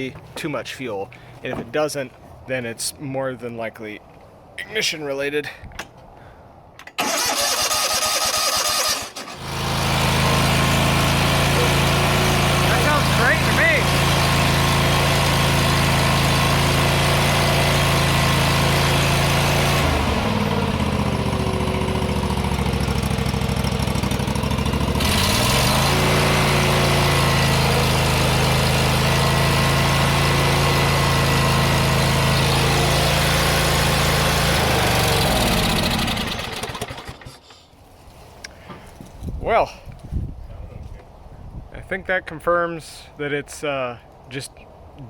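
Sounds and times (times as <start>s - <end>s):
lawn tractor engine running: 6.8s - 37.6s.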